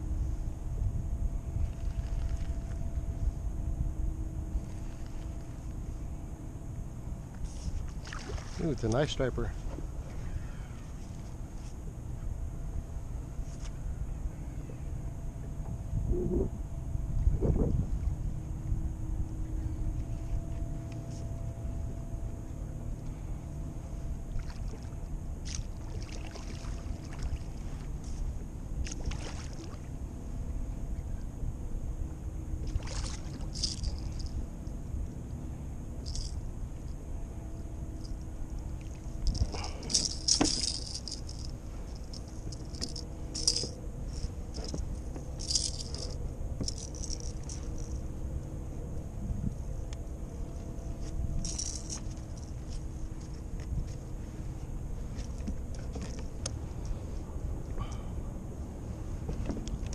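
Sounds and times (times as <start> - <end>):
wind rumbling on microphone: 0.0 - 6.2, 15.5 - 35.2, 38.9 - 48.2, 48.9 - 59.9
light rattling and jingling: 33.3 - 34.8, 36.0 - 58.2.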